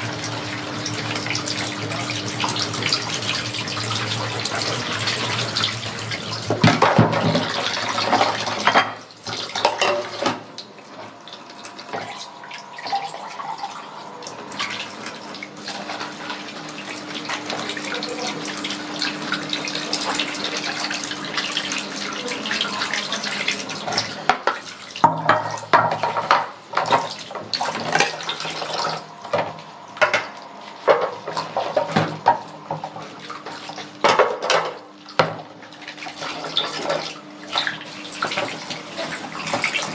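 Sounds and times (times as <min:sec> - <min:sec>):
dishes scrubbed: 0:04.5 - 0:17.7, 0:23.8 - 0:39.9
dishes clinking: 0:08.1 - 0:10.4
tap running: 0:24.0 - 0:39.9.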